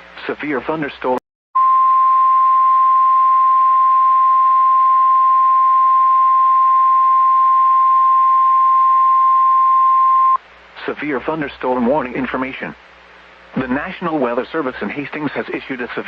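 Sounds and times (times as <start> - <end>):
steady single-pitch warning beep: 1.6 - 10.4.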